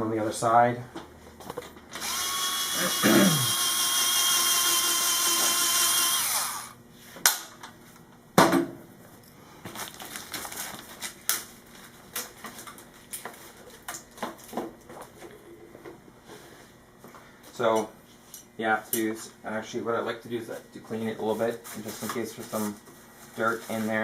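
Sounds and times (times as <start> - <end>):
electric ratchet running: 2.0 - 6.8.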